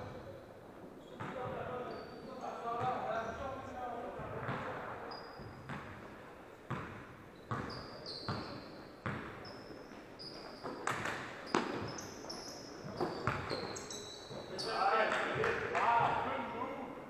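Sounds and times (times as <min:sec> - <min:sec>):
sneakers squeaking on floor: 0:01.0 - 0:15.4
basketball bouncing on hardwood: 0:06.7 - 0:07.7.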